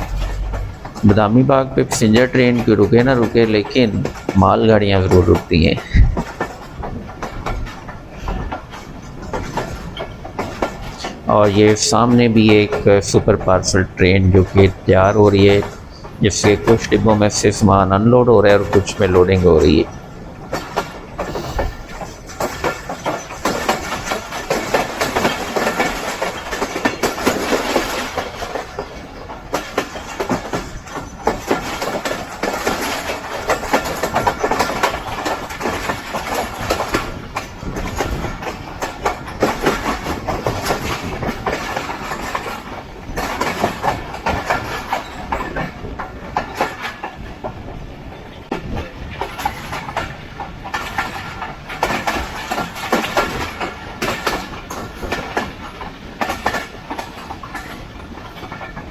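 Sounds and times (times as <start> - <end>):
train running noise: 0.0 - 58.9
train wheels clattering over rail joints: 0.0 - 58.9.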